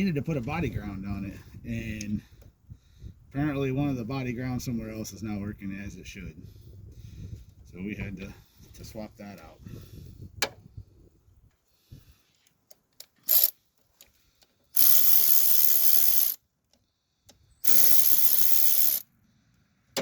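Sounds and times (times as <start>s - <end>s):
ratchet click: 13.2s - 13.5s, 14.8s - 16.4s, 17.6s - 19.0s
socket ratchet ratcheting: 13.2s - 13.5s, 14.8s - 16.4s, 17.6s - 19.0s.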